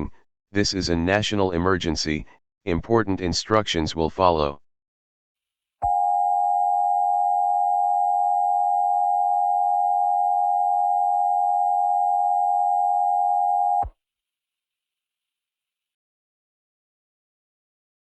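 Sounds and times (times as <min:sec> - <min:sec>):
two-tone alarm: 0:05.8 - 0:13.9.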